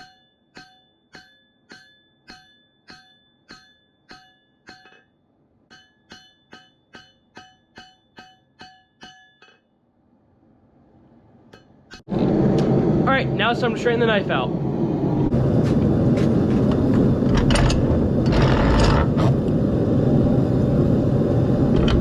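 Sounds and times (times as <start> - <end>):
hammer striking anvil: 0.0 - 9.7.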